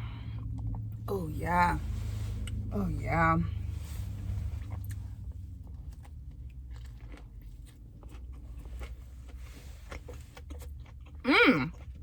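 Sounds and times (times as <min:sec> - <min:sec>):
low steady hum: 0:00.0 - 0:12.0
person chewing crunchy food: 0:03.5 - 0:12.0.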